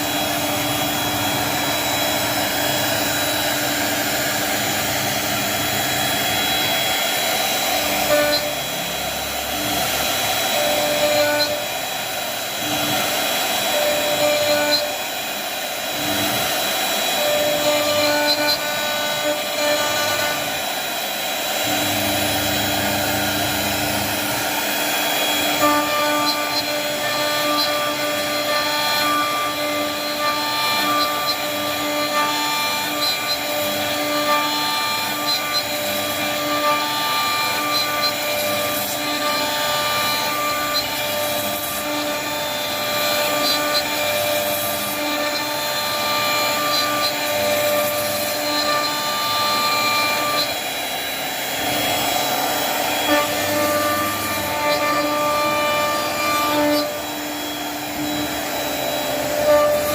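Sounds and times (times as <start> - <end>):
router spindle whine cutting wood: 0.0 - 59.9.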